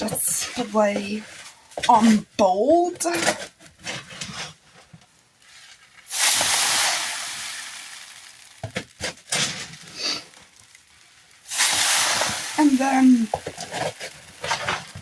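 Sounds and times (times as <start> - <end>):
cat litter pouring into box: 6.0 - 10.8, 11.4 - 15.0.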